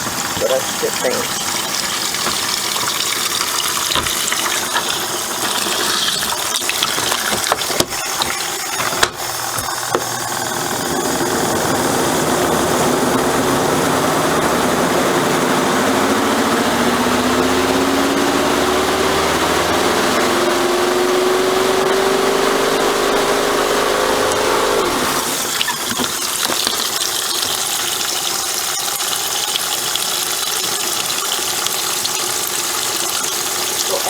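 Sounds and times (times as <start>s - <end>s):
washing machine churning: 0.0s - 34.0s
water flowing into tub: 0.0s - 34.0s
rising tone: 10.2s - 25.3s.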